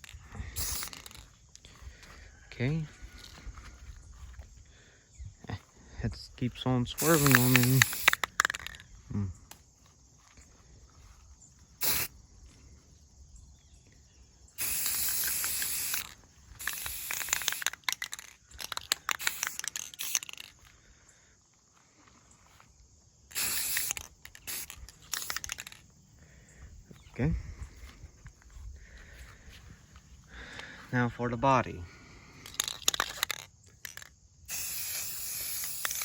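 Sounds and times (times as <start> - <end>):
spray can hissing: 0.0 - 1.4, 7.0 - 8.8, 11.8 - 12.1, 14.6 - 20.5, 23.3 - 25.8, 32.5 - 36.0.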